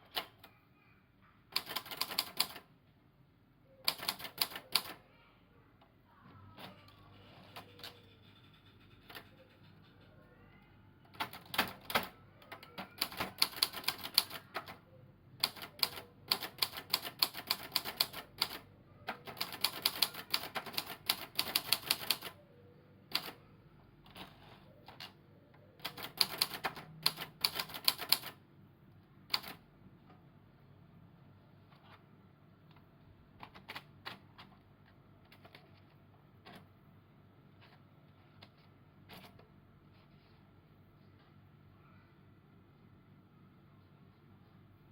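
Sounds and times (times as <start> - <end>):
typewriter keys typing: 1.6 - 2.6, 3.9 - 5.0, 7.4 - 10.0, 11.1 - 14.8, 15.4 - 22.4, 23.1 - 23.4, 25.8 - 28.4, 29.3 - 29.6, 33.4 - 34.6.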